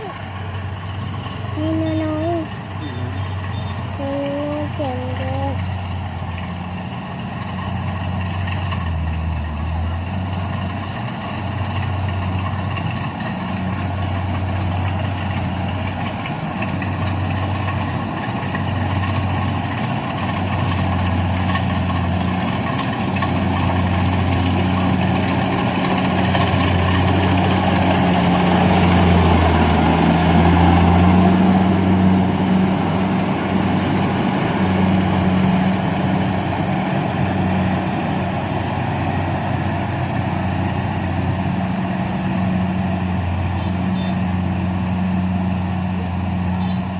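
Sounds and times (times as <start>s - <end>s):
combine harvester engine humming: 0.0s - 46.9s.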